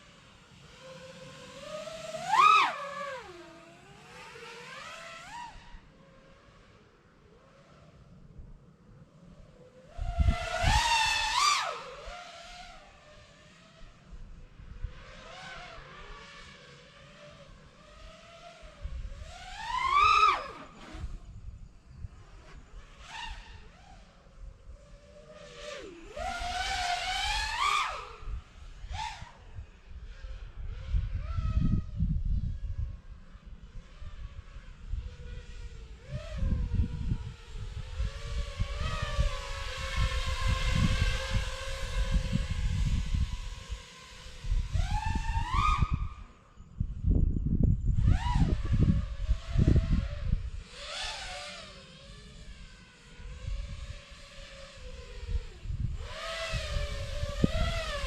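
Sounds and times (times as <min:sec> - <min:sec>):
drone propellers whining: 0:00.0 - 0:58.0
wind buffeting microphone: 0:24.4 - 0:58.0.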